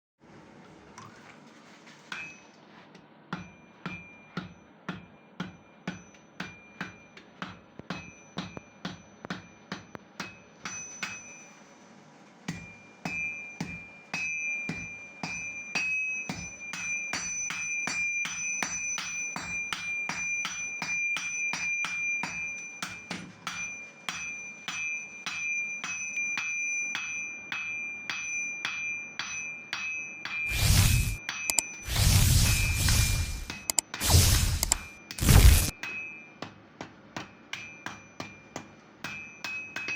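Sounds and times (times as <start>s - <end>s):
hammer ringing on iron: 3.3s - 11.6s, 12.5s - 30.5s, 37.2s - 39.9s
loud whoosh: 31.9s - 35.7s.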